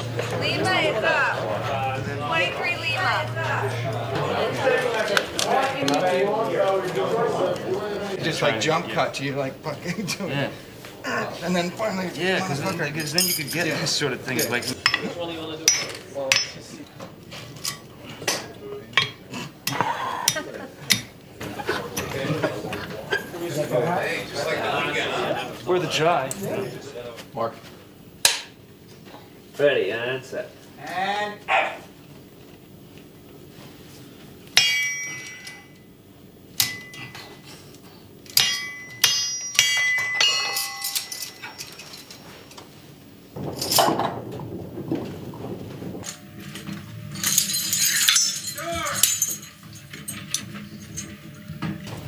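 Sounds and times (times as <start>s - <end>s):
faint voices: 0.0s - 27.6s, 43.3s - 49.4s
objects clinking and knocking: 12.5s - 16.6s, 34.6s - 35.8s, 38.3s - 42.7s, 43.3s - 52.0s
sharp metallic clangs: 34.6s - 35.8s, 36.6s - 37.4s, 38.3s - 42.3s, 43.4s - 52.0s.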